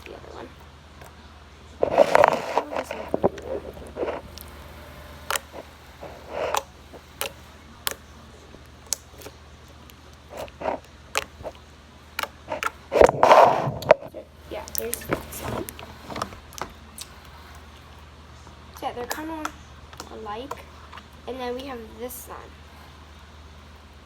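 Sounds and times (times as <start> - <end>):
slime squished by hand: 5.2 - 15.8.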